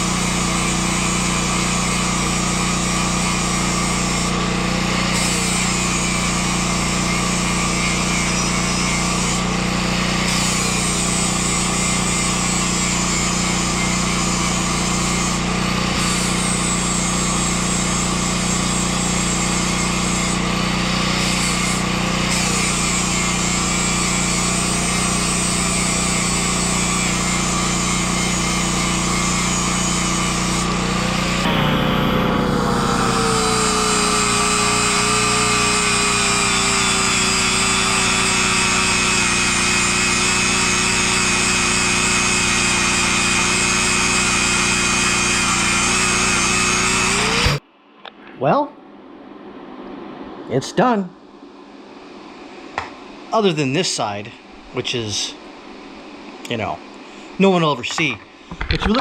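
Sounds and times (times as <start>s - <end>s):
generator engine running: 0.0s - 47.6s.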